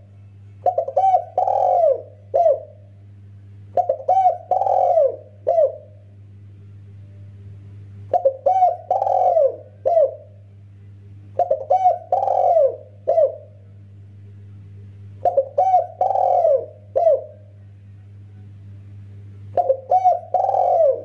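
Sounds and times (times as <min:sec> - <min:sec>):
dove cooing: 0:00.0 - 0:02.9, 0:03.7 - 0:06.0, 0:08.1 - 0:10.4, 0:11.4 - 0:13.6, 0:15.2 - 0:17.5, 0:19.5 - 0:21.0
low steady hum: 0:00.0 - 0:21.0.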